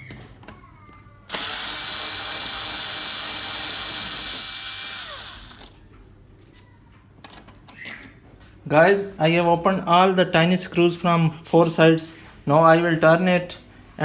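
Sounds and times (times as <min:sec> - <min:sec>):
electric screwdriver whirring: 0:01.3 - 0:05.8.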